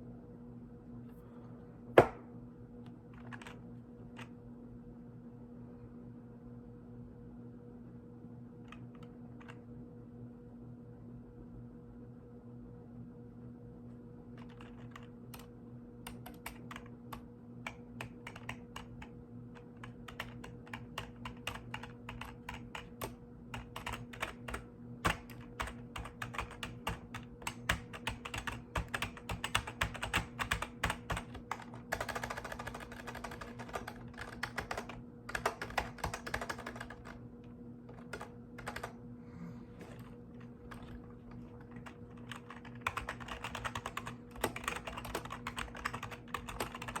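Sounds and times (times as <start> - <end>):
steady low hum: 0.0 - 47.0
mechanical keyboard clicks: 14.4 - 15.5, 16.1 - 37.2, 41.6 - 47.0.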